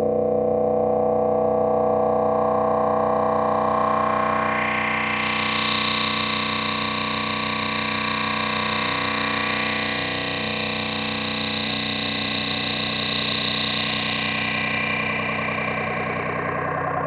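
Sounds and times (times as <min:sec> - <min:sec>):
noise drone: 0:12.2 - 0:17.0.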